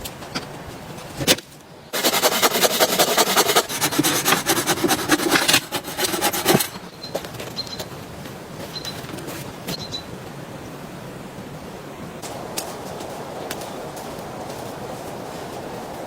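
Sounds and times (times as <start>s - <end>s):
rapid scraping and rustling: 2.0s - 7.5s.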